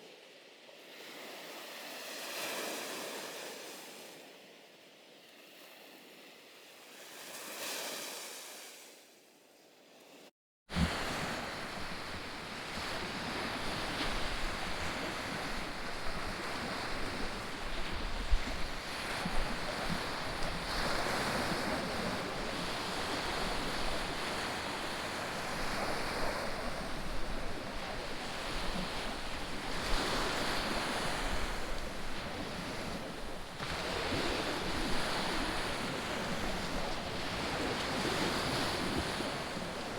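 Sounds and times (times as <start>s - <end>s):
sea surf washing onto beach: 10.7s - 39.9s
wind buffeting microphone: 10.8s - 39.9s.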